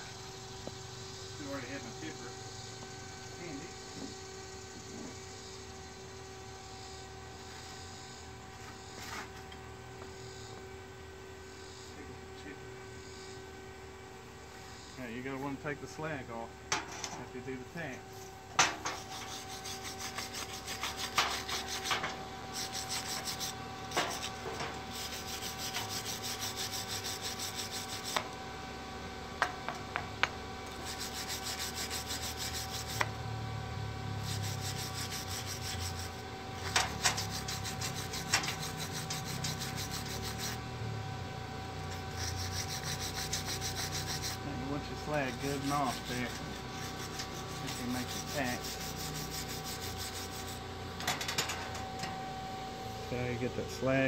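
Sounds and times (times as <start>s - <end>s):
steady hum: 0.0s - 54.0s
slag brushed and scraped off steel: 18.1s - 28.2s, 34.2s - 40.6s, 41.9s - 51.9s.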